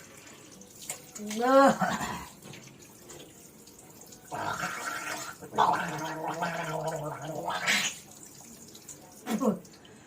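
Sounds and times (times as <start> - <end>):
person gargling water: 1.4 - 2.4, 4.2 - 8.1.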